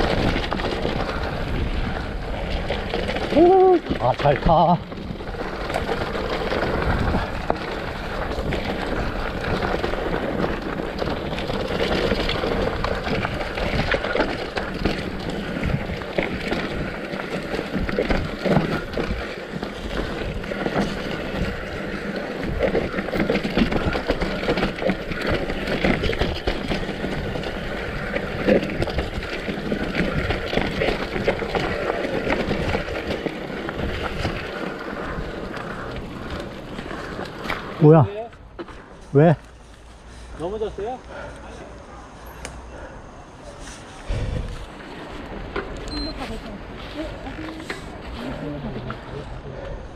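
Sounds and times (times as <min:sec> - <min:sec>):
wind noise on microphone: 0:00.0 - 0:04.0, 0:04.8 - 0:35.7, 0:44.0 - 0:46.9
bike knocks and rattles: 0:00.0 - 0:38.8
bike tyres on dirt trail: 0:00.0 - 0:49.9.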